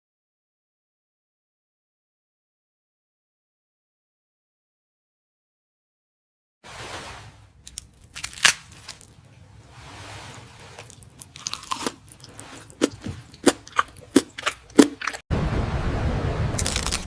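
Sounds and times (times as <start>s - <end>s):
person chewing crunchy food: 7.7s - 9.2s, 10.6s - 15.2s, 16.6s - 17.0s.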